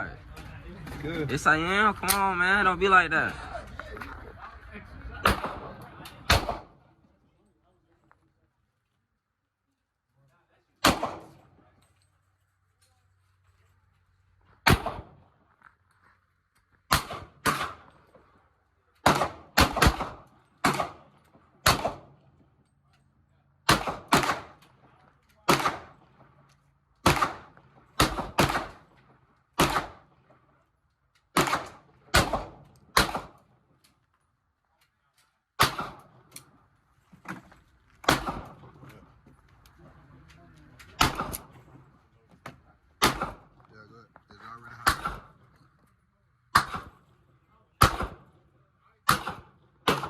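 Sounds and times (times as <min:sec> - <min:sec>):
gunshots ringing off: 0:05.2 - 0:06.8, 0:10.8 - 0:11.5, 0:14.6 - 0:15.2, 0:16.9 - 0:18.0, 0:19.0 - 0:22.2, 0:23.6 - 0:26.3, 0:27.0 - 0:30.3, 0:31.3 - 0:33.5, 0:35.6 - 0:36.2, 0:38.0 - 0:38.9, 0:40.8 - 0:41.8, 0:43.0 - 0:43.6, 0:44.7 - 0:45.4, 0:46.5 - 0:47.1, 0:47.8 - 0:48.4, 0:49.0 - 0:50.0.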